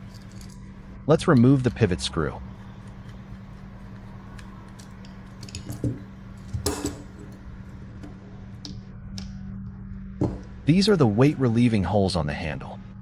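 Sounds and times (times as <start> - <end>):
knife parts clicking and clinking: 0.0 - 7.6
low hum: 0.0 - 13.0.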